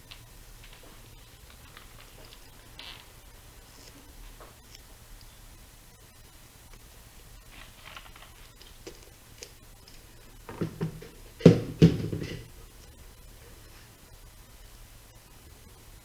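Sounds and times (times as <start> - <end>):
faint plastic rustling: 0.0 - 5.6, 6.7 - 14.0
knocks on plastic body shell: 10.5 - 12.5.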